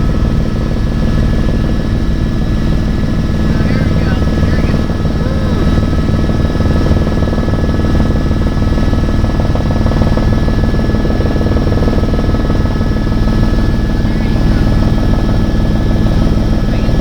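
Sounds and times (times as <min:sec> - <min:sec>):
helicopter rotor and engine: 0:00.0 - 0:17.0
high-pitched whines: 0:03.4 - 0:06.2, 0:13.0 - 0:17.0.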